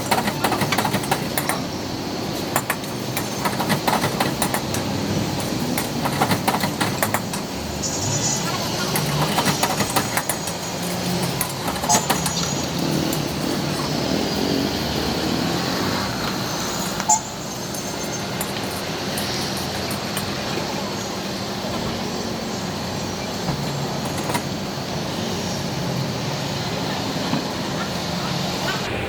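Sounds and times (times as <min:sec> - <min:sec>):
sharp clicks and clatter: 0:00.0 - 0:14.4, 0:17.7 - 0:20.6, 0:23.5 - 0:24.6
traffic hum: 0:00.0 - 0:29.0.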